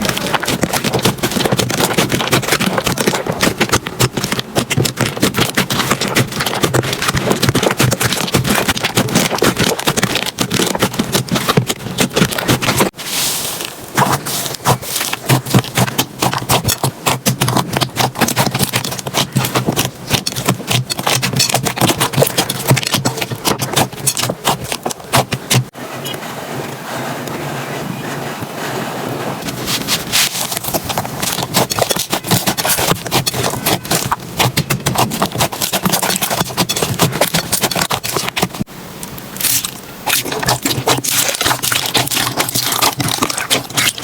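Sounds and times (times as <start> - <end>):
slime squished by hand: 39.4 - 44.0.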